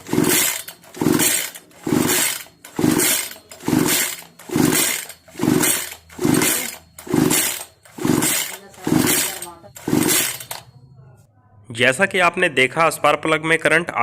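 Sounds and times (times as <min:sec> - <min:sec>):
chainsaw recoil starter pulls: 0:00.0 - 0:10.6.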